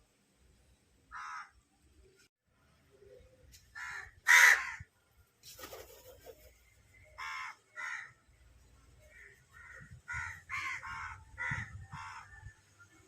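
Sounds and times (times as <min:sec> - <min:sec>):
crow cawing: 0:01.1 - 0:01.6, 0:03.8 - 0:04.9, 0:07.2 - 0:08.2, 0:09.1 - 0:12.4.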